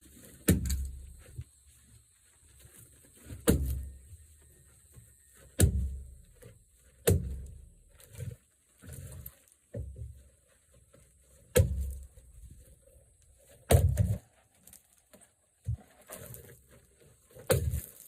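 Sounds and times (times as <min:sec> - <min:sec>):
heavy wooden thunks of firewood: 0:00.2 - 0:01.1, 0:03.3 - 0:04.0, 0:05.6 - 0:06.2, 0:06.9 - 0:07.7, 0:11.5 - 0:12.1, 0:13.6 - 0:14.2, 0:17.4 - 0:18.0.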